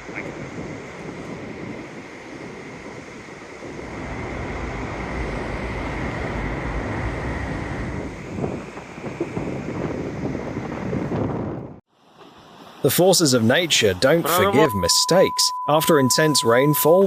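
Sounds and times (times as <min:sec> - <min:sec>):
wind buffeting microphone: 0:00.0 - 0:11.9.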